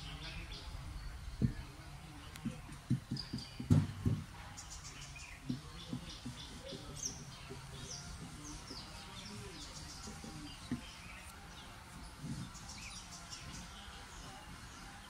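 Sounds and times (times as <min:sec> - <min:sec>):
small birds chirping: 0:00.0 - 0:15.0
soft knock: 0:02.4 - 0:04.4.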